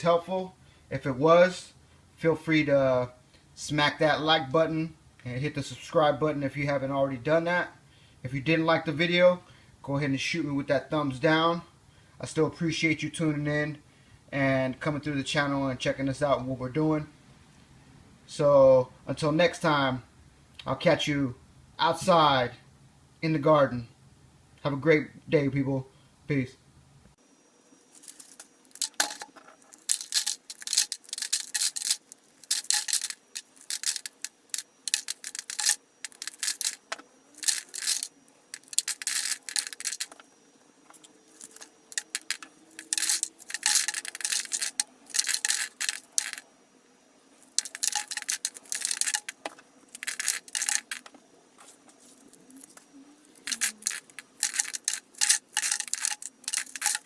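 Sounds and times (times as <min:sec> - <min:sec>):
corn kernels crackling and rattling: 0:27.8 - 0:46.5, 0:47.3 - 0:57.0.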